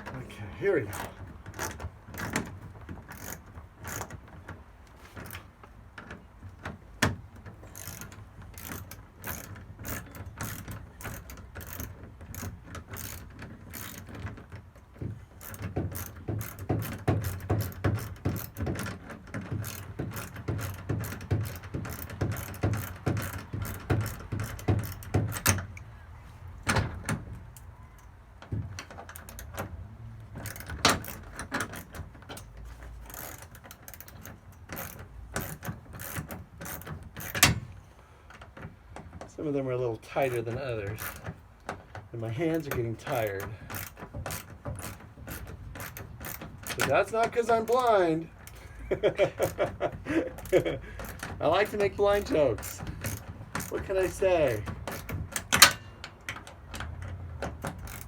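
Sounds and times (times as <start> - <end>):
ratchet wrench clicking: 0.9 - 4.3, 7.6 - 14.3, 15.4 - 25.8, 30.3 - 37.8, 40.2 - 41.3, 42.5 - 48.6, 49.2 - 58.0.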